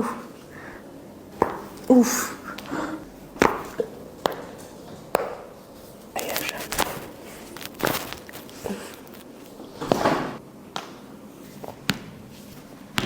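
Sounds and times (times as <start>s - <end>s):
chiropractic joint cracks: 6.2s - 10.1s.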